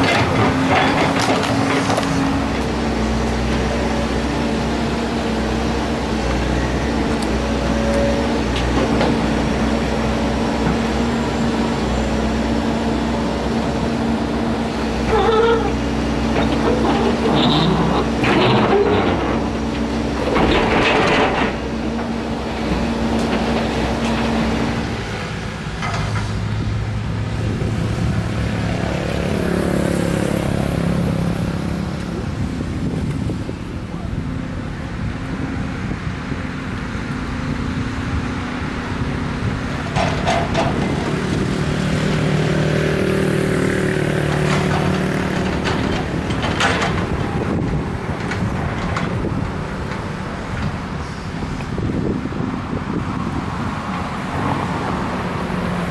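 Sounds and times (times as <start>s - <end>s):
bucket scraping and crunching road: 0.0s - 2.8s, 15.0s - 25.0s
excavator diesel engine: 0.0s - 55.9s.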